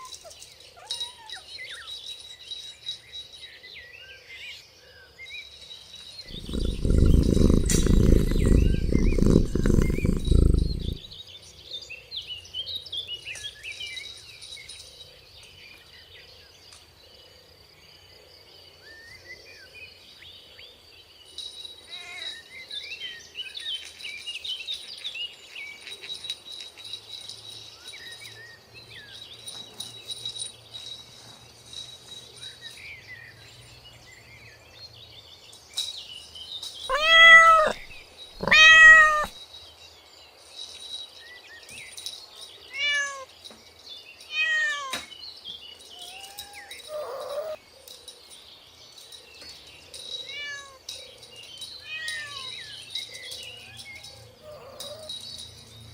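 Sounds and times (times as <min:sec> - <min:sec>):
faint high chirping: 0:05.4 - 0:11.2, 0:35.8 - 0:39.7, 0:40.6 - 0:55.9
kittens meowing: 0:06.3 - 0:11.1, 0:36.9 - 0:39.4, 0:42.8 - 0:43.2, 0:46.0 - 0:47.6.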